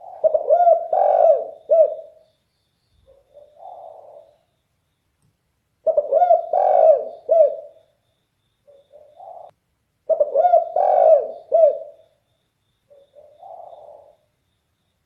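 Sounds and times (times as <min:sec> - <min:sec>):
dove cooing: 0:00.0 - 0:02.2, 0:03.0 - 0:04.5, 0:05.8 - 0:07.9, 0:08.7 - 0:12.2, 0:12.9 - 0:14.3.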